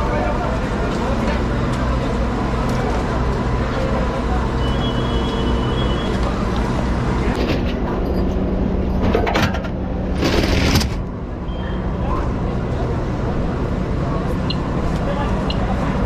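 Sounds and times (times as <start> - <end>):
fire engine running: 0.0 - 16.0.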